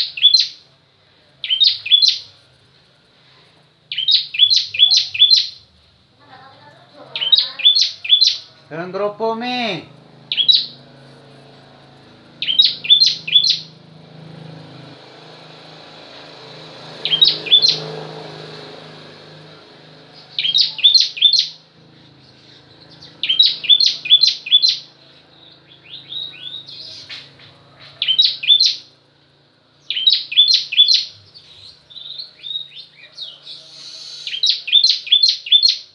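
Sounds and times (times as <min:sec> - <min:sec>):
bird chirping high and sharp: 0:00.0 - 0:00.6, 0:01.4 - 0:02.3, 0:03.9 - 0:05.6, 0:07.1 - 0:08.6, 0:09.3 - 0:10.9, 0:12.4 - 0:13.8, 0:16.9 - 0:18.1, 0:20.1 - 0:21.6, 0:22.3 - 0:27.4, 0:28.0 - 0:28.9, 0:29.8 - 0:35.9.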